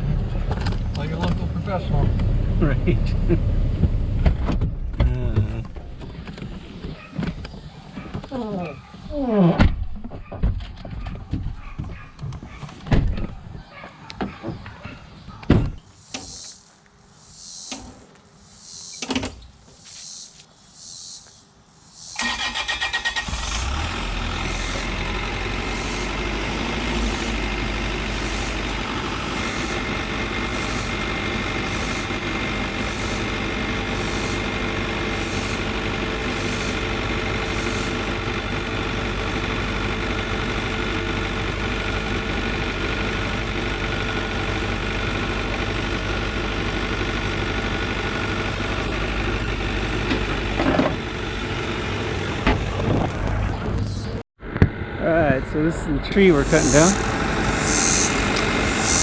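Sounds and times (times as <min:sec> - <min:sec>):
diesel engine starting and idling: 0:00.0 - 0:08.6, 0:22.0 - 0:59.0.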